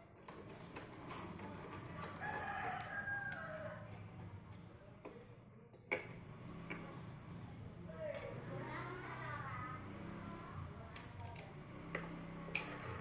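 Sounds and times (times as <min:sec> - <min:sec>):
rooster crowing: 0:02.2 - 0:03.8.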